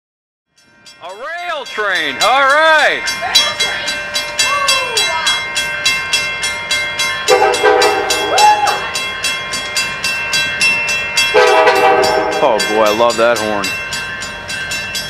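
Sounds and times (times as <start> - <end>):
locomotive air horn blasts: 7.3 - 8.3, 11.3 - 12.6.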